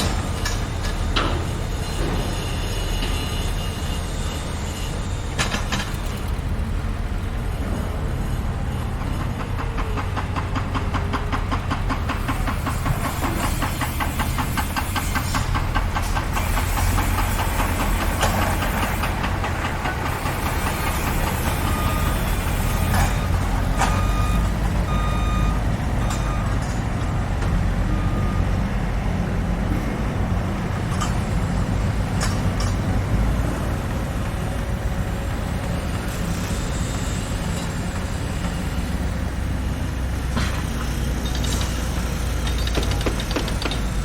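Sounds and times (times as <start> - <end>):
construction vehicle engine running: 0.0 - 44.0
reversing alarm beeping: 20.6 - 28.7.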